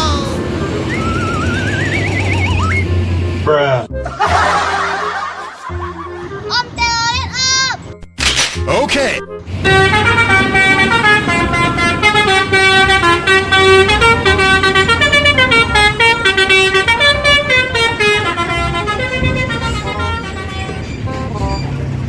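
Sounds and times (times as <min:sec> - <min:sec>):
bus engine rumble: 0:00.0 - 0:08.1, 0:08.7 - 0:22.0
bus horn playing a tune: 0:09.2 - 0:22.0.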